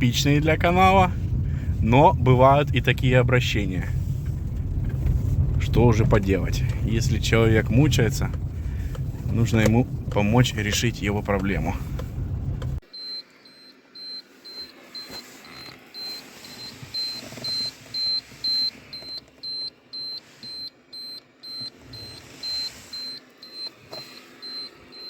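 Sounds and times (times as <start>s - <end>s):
faint rustling: 0.2s - 12.8s
electronic warning beep: 12.8s - 25.0s.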